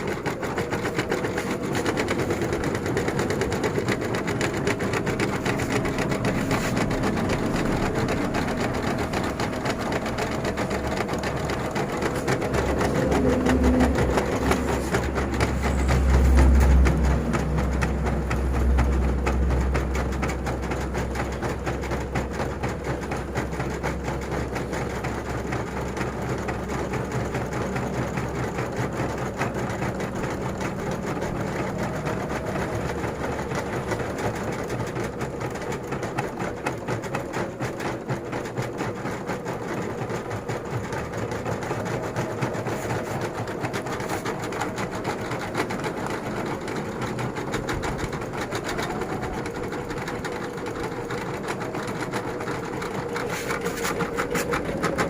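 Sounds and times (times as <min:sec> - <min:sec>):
embroidery machine stitching: 0:00.0 - 0:55.0
low hum: 0:01.2 - 0:25.4.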